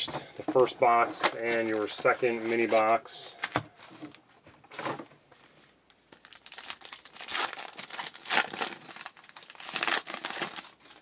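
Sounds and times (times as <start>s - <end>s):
wrapper tearing and crinkling: 6.1s - 11.0s.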